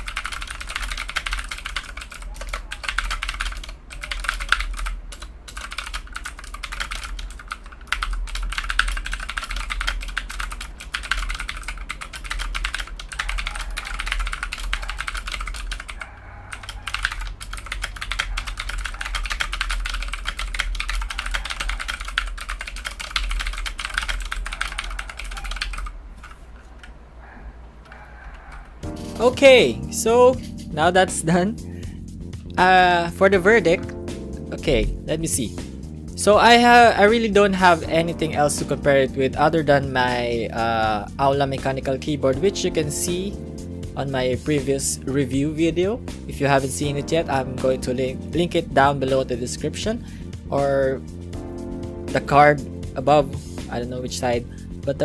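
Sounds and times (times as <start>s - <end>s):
mechanical keyboard typing: 0.0s - 26.9s.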